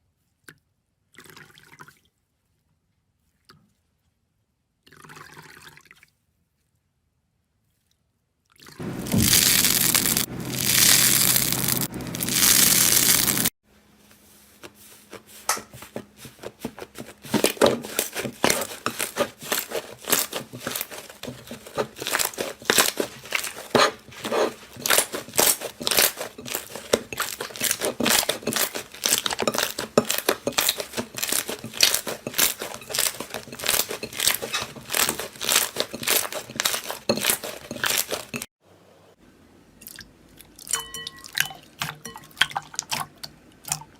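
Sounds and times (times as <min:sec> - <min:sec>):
slime crackling and popping: 0:09.0 - 0:13.5, 0:17.6 - 0:38.4.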